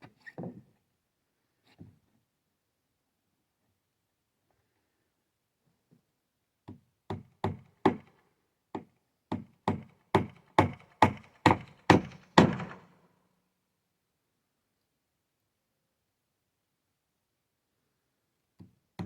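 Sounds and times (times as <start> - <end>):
hammer driving nails into wood: 9.4 - 12.8.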